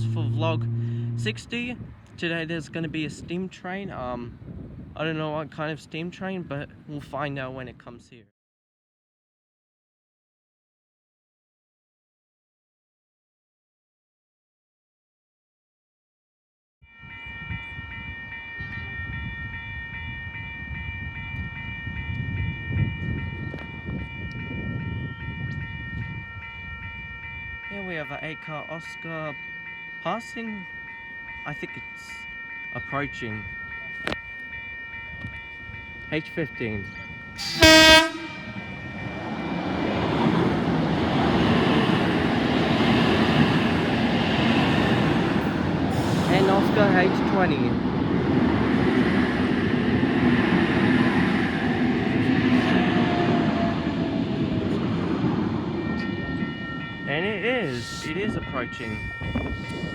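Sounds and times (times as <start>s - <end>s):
electric train passing: 0.0s - 2.8s, 16.9s - 59.9s
train wheels rumbling on rails: 36.8s - 57.4s.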